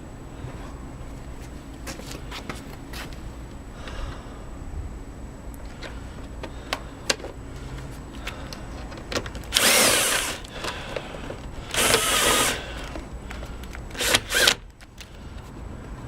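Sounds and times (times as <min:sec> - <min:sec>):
power drill driving screws: 0:09.5 - 0:10.8, 0:11.7 - 0:13.0, 0:13.9 - 0:14.6.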